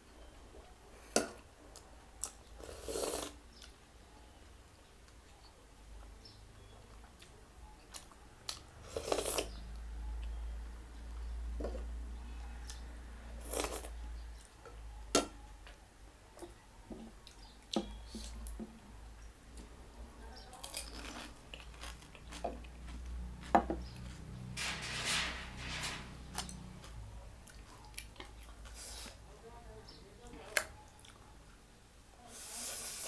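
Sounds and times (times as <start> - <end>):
chewing: 20.5 - 24.2, 30.3 - 31.3.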